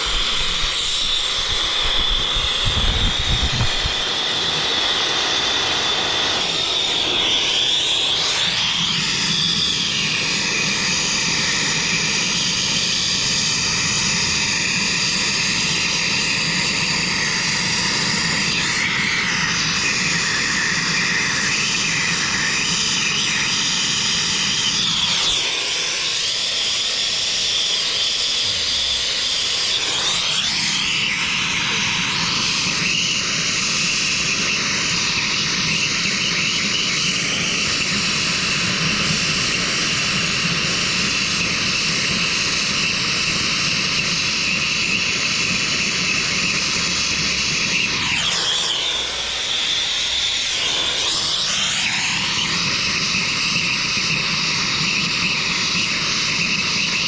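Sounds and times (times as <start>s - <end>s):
machine whooshing drone: 0.0s - 10.3s, 45.1s - 53.7s.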